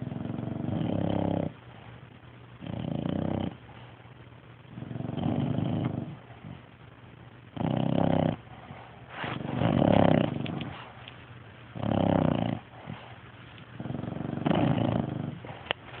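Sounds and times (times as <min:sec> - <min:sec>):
pets snoring: 0:00.0 - 0:02.0, 0:02.6 - 0:04.0, 0:04.7 - 0:06.7, 0:07.5 - 0:16.0
quiet breathing: 0:00.0 - 0:02.3, 0:03.4 - 0:06.8, 0:07.6 - 0:16.0.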